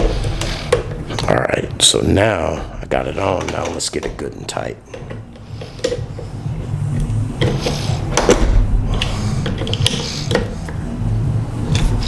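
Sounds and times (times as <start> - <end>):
low rumbling handling noise: 0.0 - 12.0
screws being tightened by hand: 6.9 - 10.8.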